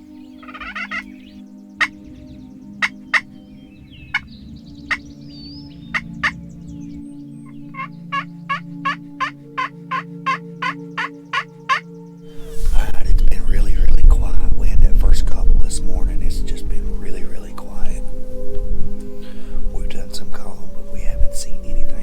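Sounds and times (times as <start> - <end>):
turkey clucking: 0.4 - 1.1, 2.8 - 3.3, 4.1 - 4.3, 5.8 - 6.4, 7.4 - 11.8
turkey yelping: 0.4 - 1.2, 2.8 - 3.3, 4.1 - 4.3, 5.8 - 6.4, 7.4 - 11.8.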